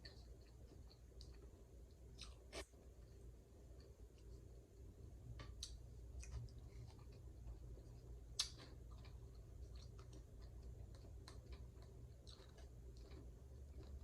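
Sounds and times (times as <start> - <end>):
low steady hum: 0.0 - 14.0
eating clicks and ticks: 5.3 - 14.0.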